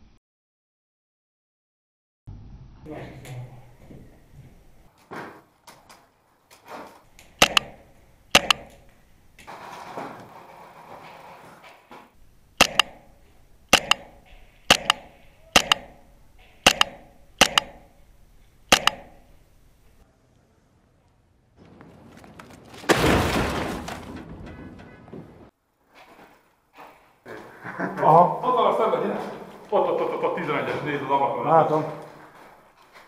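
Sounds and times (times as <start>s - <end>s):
airsoft rifle shots: 7.4s - 8.8s, 12.6s - 18.0s, 18.7s - 19.4s.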